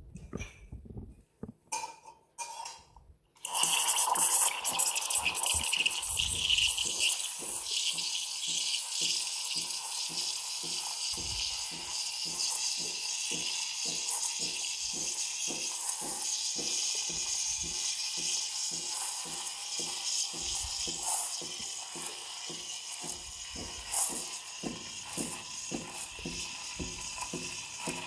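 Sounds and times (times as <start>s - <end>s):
steam wand hissing: 3.5s - 28.0s.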